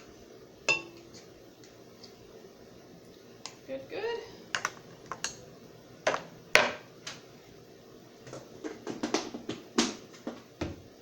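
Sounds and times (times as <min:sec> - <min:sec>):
utensils clinking against bowl: 0:00.7 - 0:01.2, 0:04.6 - 0:05.4.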